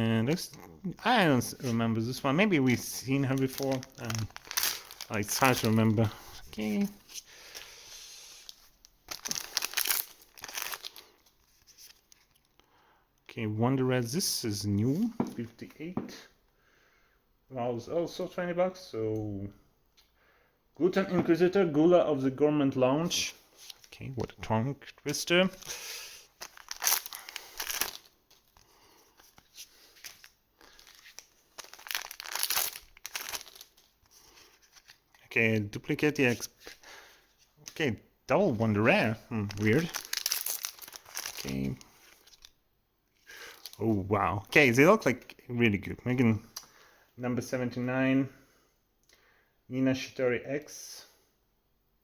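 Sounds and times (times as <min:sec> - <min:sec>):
foil wrapper crinkling: 0:01.4 - 0:07.8, 0:08.4 - 0:12.6, 0:25.5 - 0:35.2, 0:38.9 - 0:42.6, 0:43.3 - 0:44.0.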